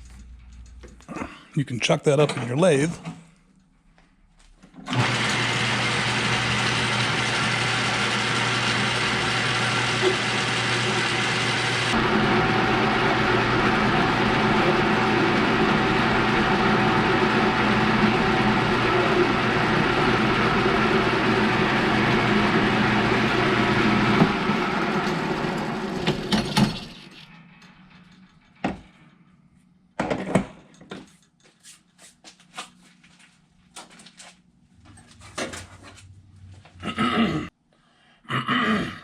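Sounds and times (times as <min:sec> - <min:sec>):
lathe running: 0:04.9 - 0:27.1.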